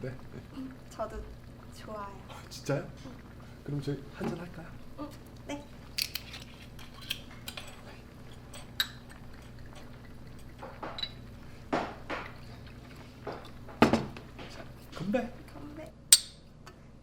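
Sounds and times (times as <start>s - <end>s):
drink pouring into glasses: 0.0s - 15.4s
glass and bottle clinking: 8.5s - 9.1s, 10.6s - 12.4s.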